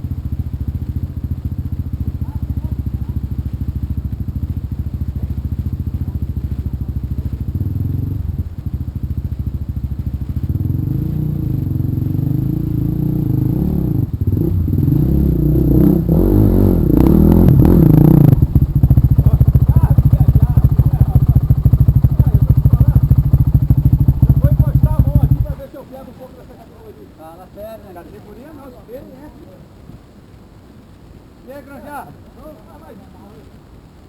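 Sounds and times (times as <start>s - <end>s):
motorcycle engine idling and revving: 0.0s - 25.6s.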